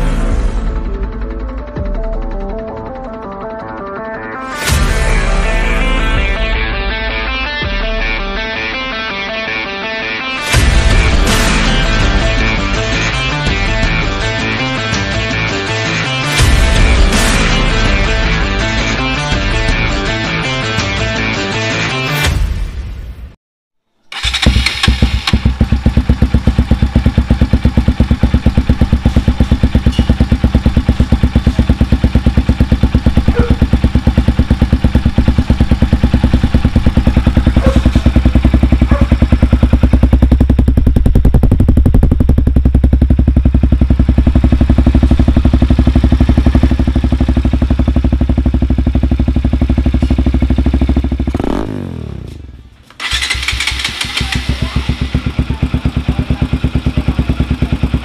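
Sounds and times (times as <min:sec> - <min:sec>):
motorcycle engine pulsing exhaust: 0:24.1 - 0:58.0.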